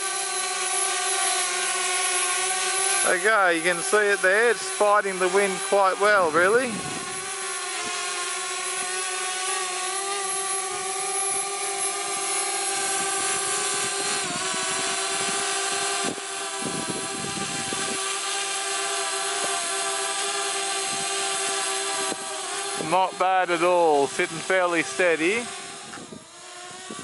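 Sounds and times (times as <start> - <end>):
drone propellers whining: 0.0 - 27.0
wind buffeting microphone: 6.2 - 8.0, 12.9 - 18.0, 25.7 - 27.0.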